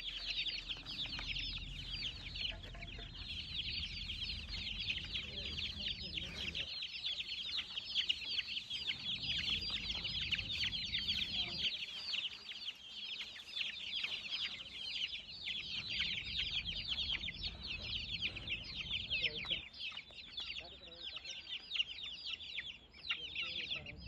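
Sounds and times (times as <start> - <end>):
chicks peeping: 0.0 - 24.0.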